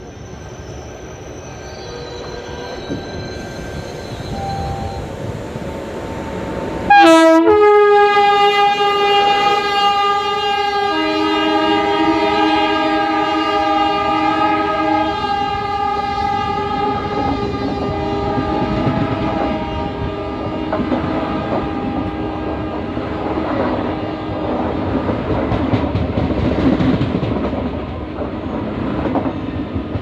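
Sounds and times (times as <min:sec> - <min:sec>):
train rumble: 0:00.0 - 0:30.0
locomotive horn blast: 0:06.8 - 0:23.1.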